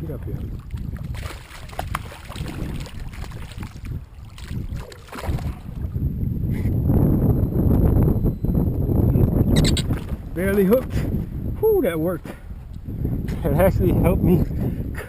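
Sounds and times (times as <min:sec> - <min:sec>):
water splashing by kayak: 0:00.0 - 0:06.2, 0:09.6 - 0:11.2
wind rumble on microphone: 0:00.0 - 0:15.0.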